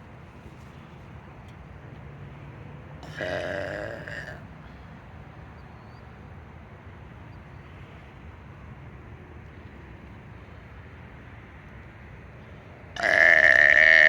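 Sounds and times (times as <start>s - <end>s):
low outdoor background rumble: 0.0s - 14.0s.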